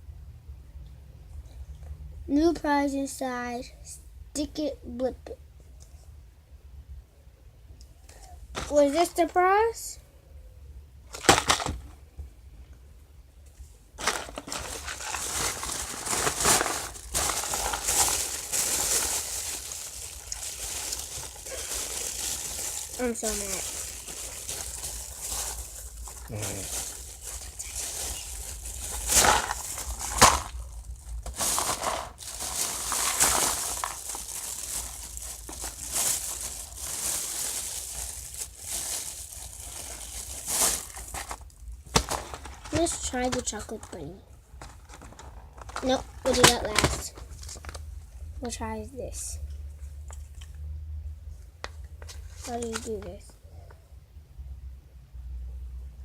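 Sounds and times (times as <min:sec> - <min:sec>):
packaging crinkled by hand: 0:11.1 - 0:11.8, 0:14.0 - 0:48.0, 0:52.0 - 0:53.3.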